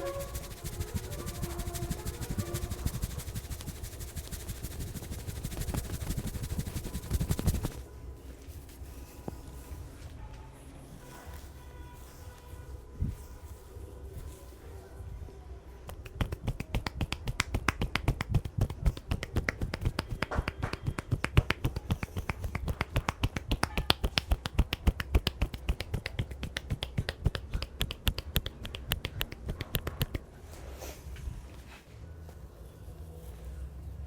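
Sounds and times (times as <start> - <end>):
hands slapping head: 0.0 - 7.8, 15.9 - 30.2.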